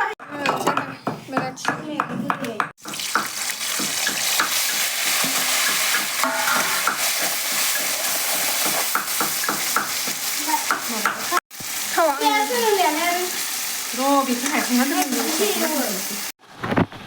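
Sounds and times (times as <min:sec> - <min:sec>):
food sizzling in oil: 0:02.8 - 0:16.4.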